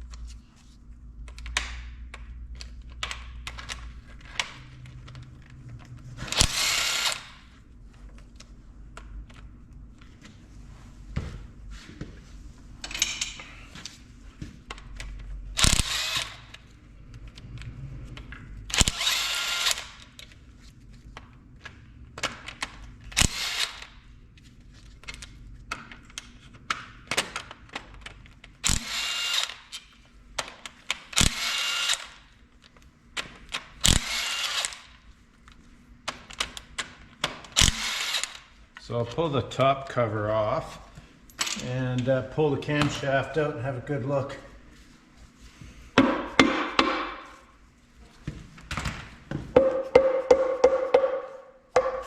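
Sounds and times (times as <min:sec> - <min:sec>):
power tool bursts: 0:15.6 - 0:16.5, 0:28.7 - 0:29.6, 0:31.2 - 0:32.2, 0:33.9 - 0:34.8, 0:37.6 - 0:38.4.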